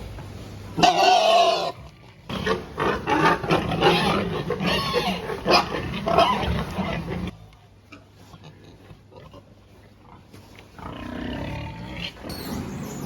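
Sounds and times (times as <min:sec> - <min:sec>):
pigs squealing and grunting: 0:00.8 - 0:07.4, 0:08.0 - 0:13.0.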